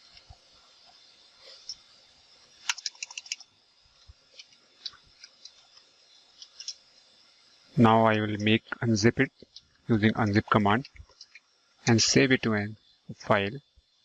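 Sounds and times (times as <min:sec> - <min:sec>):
computer keyboard keystrokes: 0:02.7 - 0:03.4.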